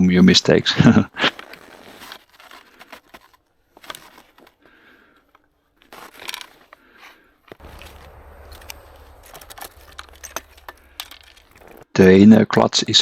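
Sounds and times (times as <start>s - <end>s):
low steady hum: 7.6s - 11.8s
metal parts clicking and scraping: 7.6s - 11.8s.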